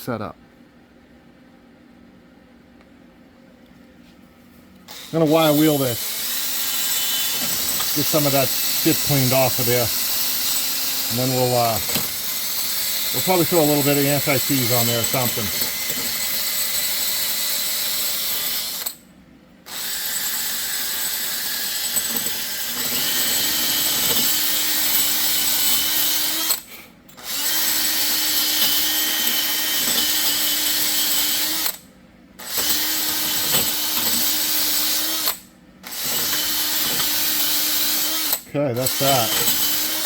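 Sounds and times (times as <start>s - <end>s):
wire wheel scrubbing rust: 5.1s - 16.2s.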